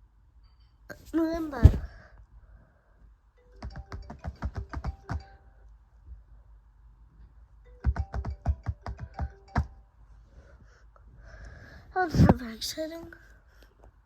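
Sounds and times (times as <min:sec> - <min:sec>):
fingers tapping on laptop case: 0:03.6 - 0:05.3, 0:07.8 - 0:09.8.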